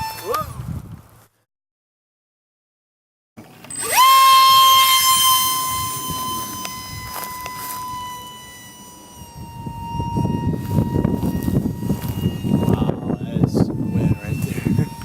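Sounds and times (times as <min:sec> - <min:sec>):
electric ducted fan whine: 0:03.4 - 0:15.0.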